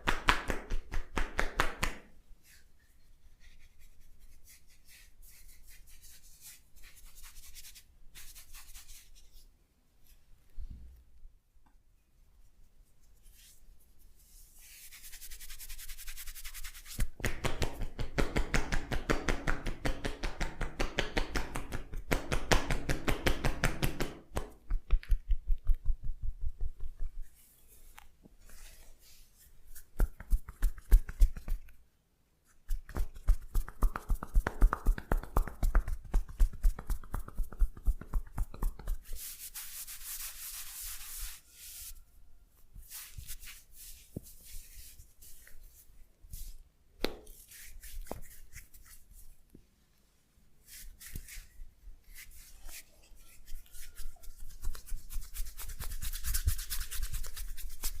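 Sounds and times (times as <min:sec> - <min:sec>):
soft rubbing hiss: 0:02.1 - 0:11.2, 0:12.0 - 0:17.2, 0:25.9 - 0:31.8, 0:32.4 - 0:58.0.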